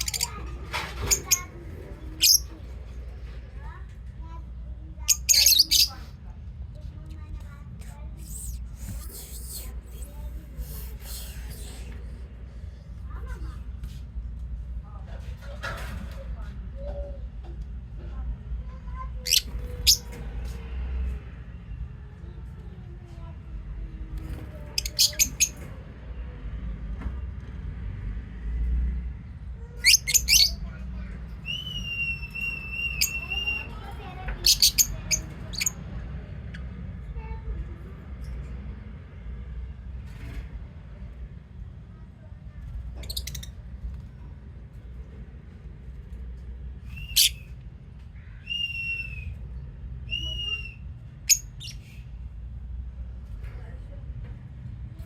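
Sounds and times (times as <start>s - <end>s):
lovebirds chirping shrilly: 5.1s - 6.0s, 8.2s - 11.9s, 46.9s - 47.5s
lovebird whistled calls: 31.4s - 33.7s, 48.4s - 49.3s, 50.1s - 51.5s.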